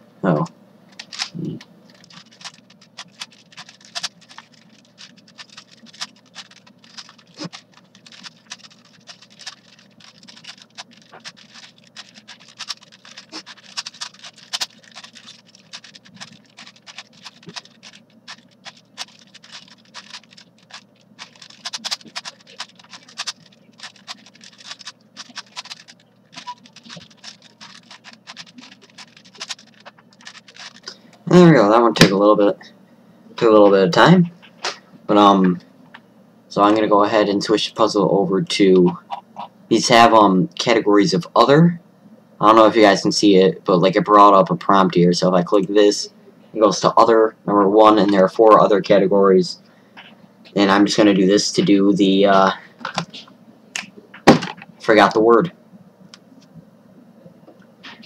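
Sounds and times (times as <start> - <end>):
puzzle cube clicking and scraping: 0.9 - 31.2.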